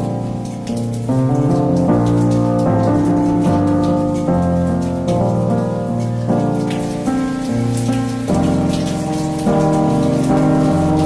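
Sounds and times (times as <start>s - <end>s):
rain falling: 0.0s - 11.0s.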